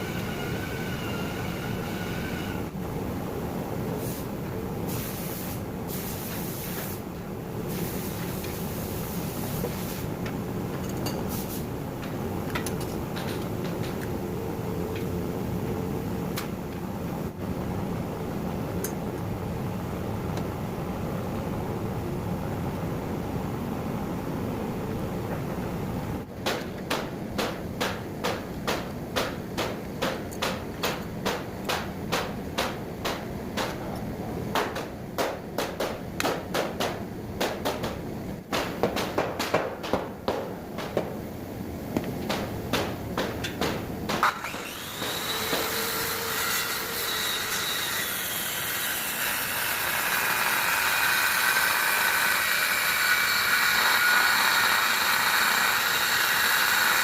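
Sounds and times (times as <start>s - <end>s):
sharp clicks and knocks: 12.0s - 14.2s
sharp knocks: 42.2s - 44.4s
circular saw running: 44.2s - 57.0s.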